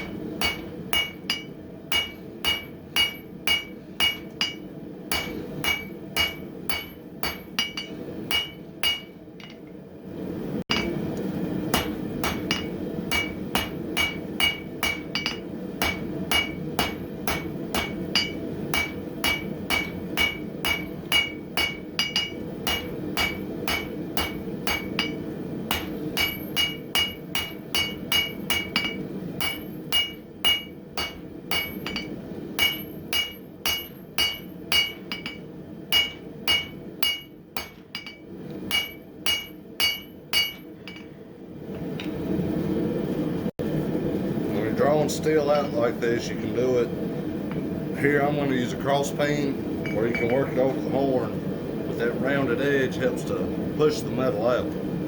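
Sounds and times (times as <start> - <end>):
hammer ringing on anvil: 0.0 - 9.6, 10.7 - 11.0, 11.7 - 41.1, 49.8 - 51.0.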